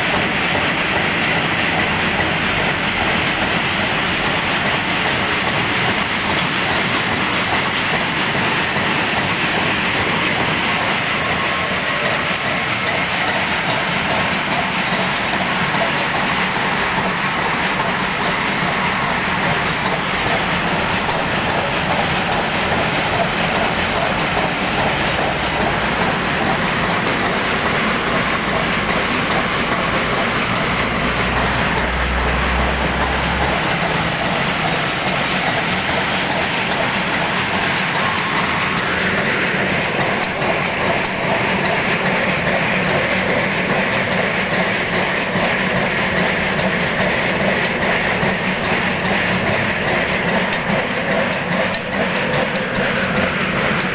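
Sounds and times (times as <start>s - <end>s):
sorting machine clattering: 0.0s - 53.9s.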